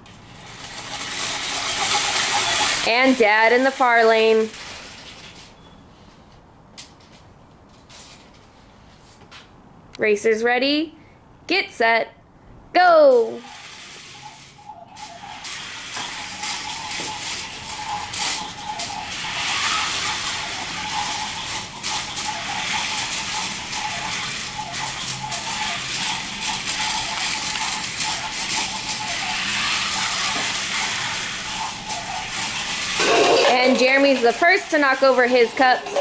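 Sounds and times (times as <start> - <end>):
small electric motors whirring: 0.4 - 5.0, 13.4 - 36.0.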